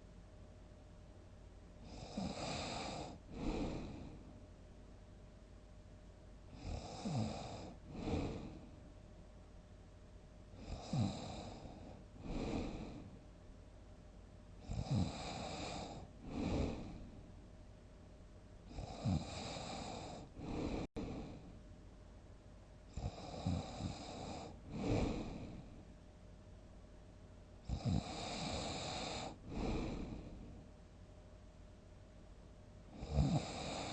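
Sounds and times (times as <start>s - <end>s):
person snoring loudly: 1.9s - 4.1s, 6.5s - 8.6s, 10.6s - 13.0s, 14.6s - 17.0s, 18.7s - 21.3s, 27.6s - 30.2s, 33.0s - 33.9s.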